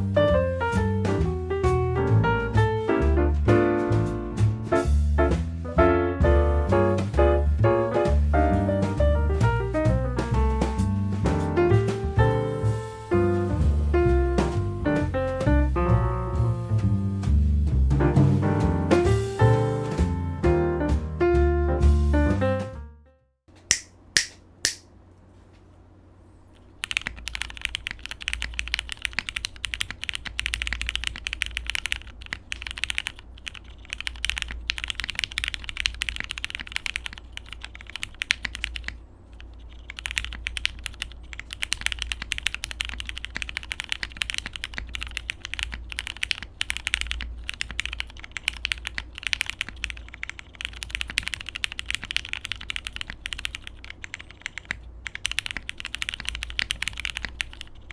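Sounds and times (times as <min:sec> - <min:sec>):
mechanical keyboard typing: 0:26.8 - 0:57.9.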